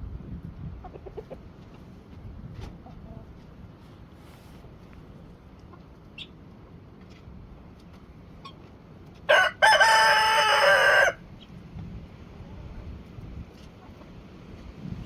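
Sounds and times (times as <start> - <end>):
faint low wind rumble: 0.0 - 15.0
rooster crowing: 9.3 - 11.2.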